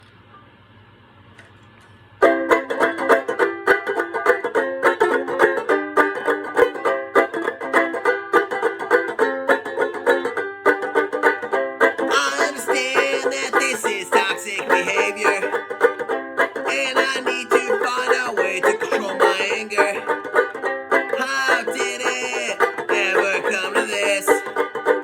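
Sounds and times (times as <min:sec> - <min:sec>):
banjolele strummed: 0:02.2 - 0:25.0
person singing: 0:12.0 - 0:15.7, 0:16.4 - 0:20.4, 0:21.0 - 0:24.6.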